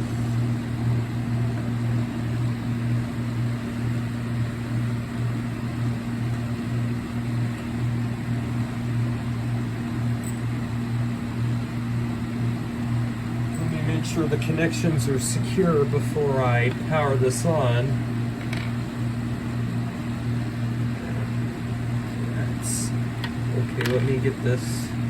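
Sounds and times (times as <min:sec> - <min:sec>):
low machine hum: 0:00.0 - 0:25.0.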